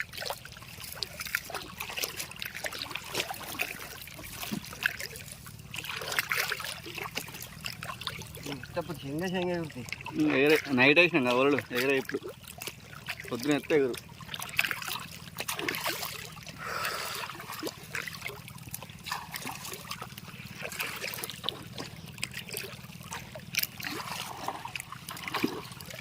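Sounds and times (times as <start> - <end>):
water trickling and splashing: 0.0 - 26.0
steady low hum: 14.0 - 26.0.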